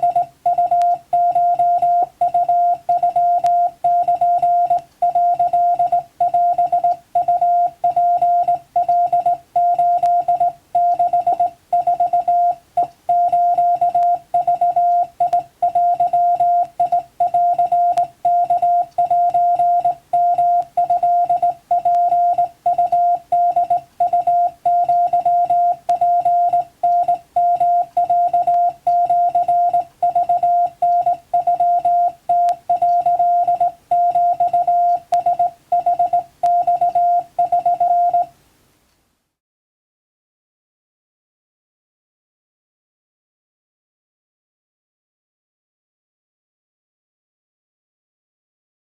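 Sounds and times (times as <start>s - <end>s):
morse code tone: 0.0s - 38.3s.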